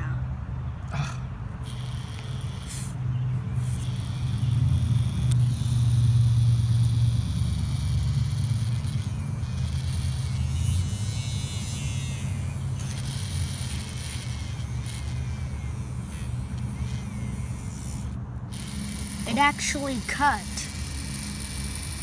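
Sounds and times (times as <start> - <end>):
small motor humming: 1.6 - 22.0.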